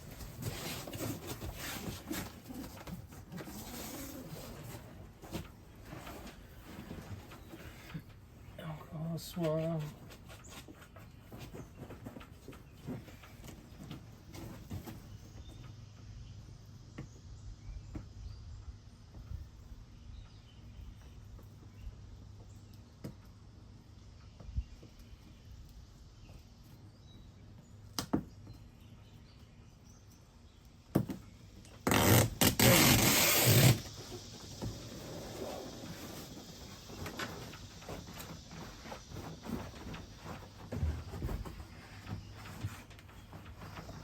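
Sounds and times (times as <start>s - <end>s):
loud rasping noise: 31.8s - 34.2s.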